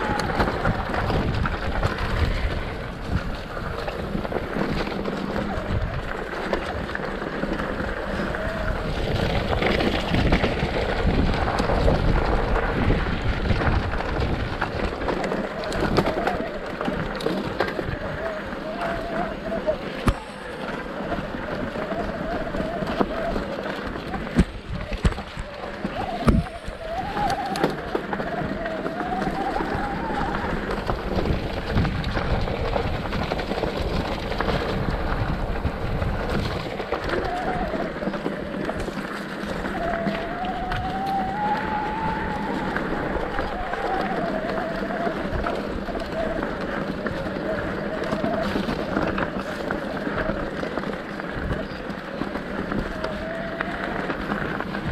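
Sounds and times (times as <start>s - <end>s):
bicycle tyre noise: 0.0s - 54.9s
bike clicks and rattles: 0.0s - 54.9s
wind rushing over microphone: 0.0s - 54.9s
wavering squeal: 39.5s - 46.4s.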